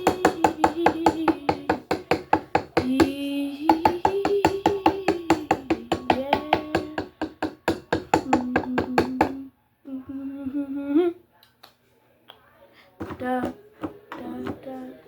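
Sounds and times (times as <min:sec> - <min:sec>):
person humming: 0:00.0 - 0:02.2, 0:02.8 - 0:11.2.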